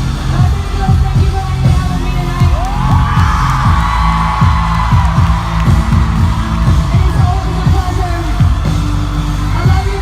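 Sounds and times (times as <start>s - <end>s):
live pop music: 0.0s - 10.0s
pulsing bass drum: 0.0s - 10.0s
person singing: 6.7s - 10.0s.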